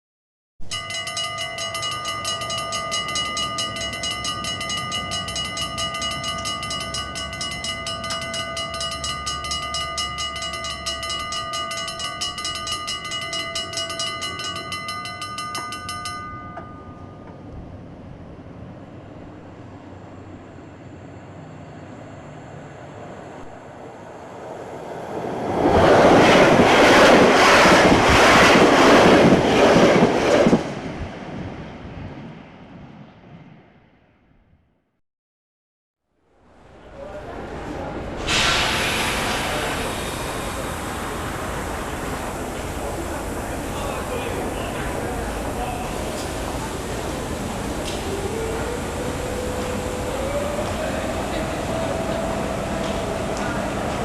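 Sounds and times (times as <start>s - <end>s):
pulsing high ringing tone: 0.7s - 17.4s
train passing: 0.7s - 34.0s, 36.3s - 54.0s
wheels clattering on rail joints: 0.8s - 19.2s, 38.0s - 54.0s.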